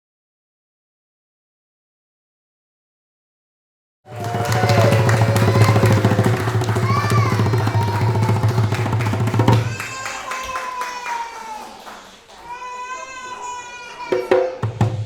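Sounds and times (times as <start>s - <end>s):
music with fast beat: 4.2s - 9.8s.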